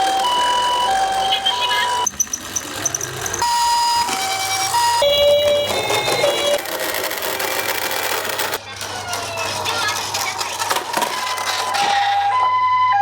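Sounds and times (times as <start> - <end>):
electronic two-tone toy sirens: 0.0 - 9.2, 10.6 - 13.0
lower-pitched siren: 12.1 - 13.0.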